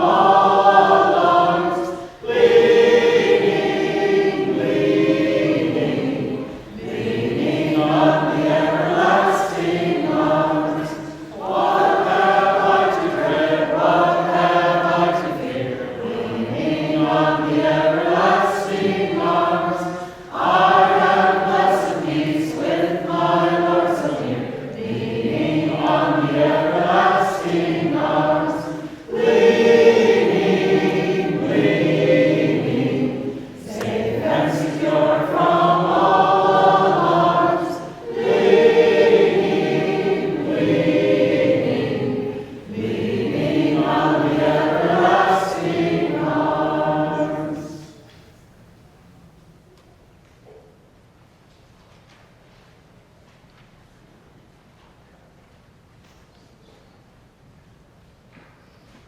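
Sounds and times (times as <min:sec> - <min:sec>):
vocal group singing: 0:00.0 - 0:48.1.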